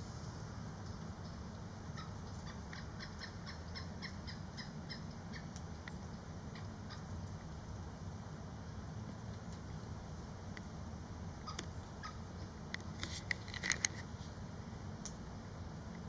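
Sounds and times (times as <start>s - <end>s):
woodpecker calling: 1.2s - 7.1s, 11.4s - 12.3s.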